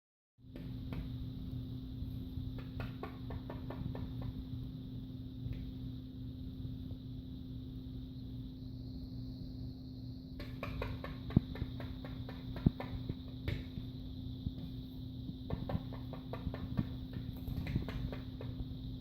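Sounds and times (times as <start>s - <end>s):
low electrical hum: 0.4s - 19.0s
faint high whine: 4.3s - 19.0s
light taps: 10.4s - 13.9s.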